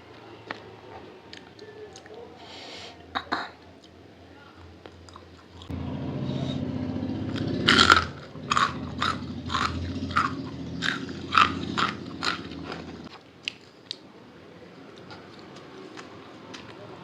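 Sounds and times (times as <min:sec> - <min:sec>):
wet chewing mouth sounds: 0:04.8 - 0:05.7, 0:07.3 - 0:14.0.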